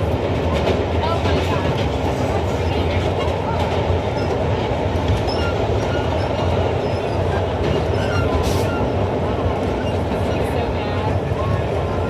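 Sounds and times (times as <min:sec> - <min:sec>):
subway train wheels rumbling on rail: 0:00.0 - 0:12.0.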